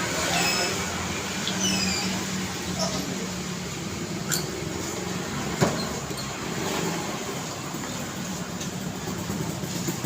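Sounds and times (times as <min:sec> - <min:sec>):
cars passing: 0:00.0 - 0:10.0.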